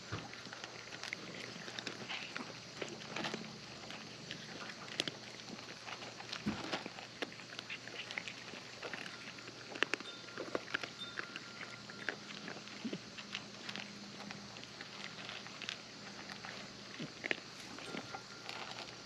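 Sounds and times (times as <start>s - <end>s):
cats chewing and licking: 0.0s - 19.0s
faint steady hum: 0.0s - 19.0s.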